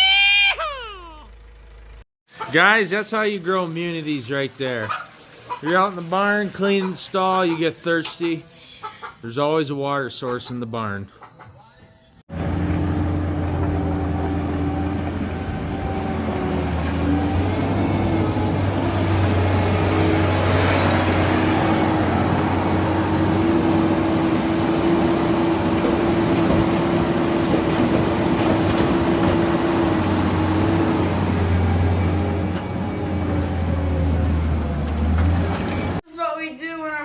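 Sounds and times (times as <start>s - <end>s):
loader engine running: 1.0s - 2.0s, 12.3s - 36.0s.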